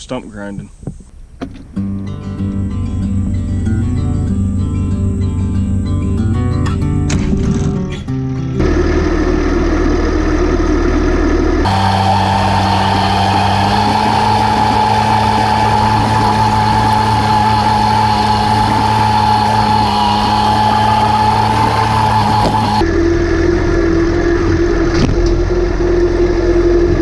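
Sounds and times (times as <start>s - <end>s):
engine running steadily: 11.6s - 22.8s
whining engine drone: 11.6s - 24.8s.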